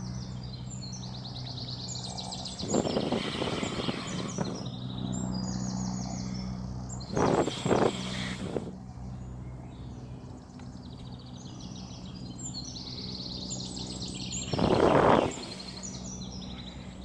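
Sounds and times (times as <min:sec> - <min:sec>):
rushes of air noise: 0:02.0 - 0:09.0, 0:13.8 - 0:17.0.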